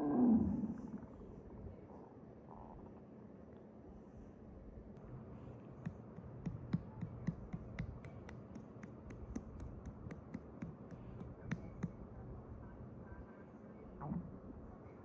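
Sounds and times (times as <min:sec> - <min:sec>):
stomach rumbling with gurgling pops: 0:14.0 - 0:14.6.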